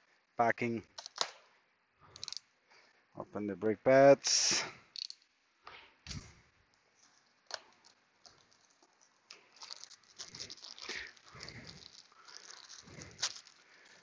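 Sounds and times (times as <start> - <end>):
packaging rustling and crinkling: 6.2 - 14.0.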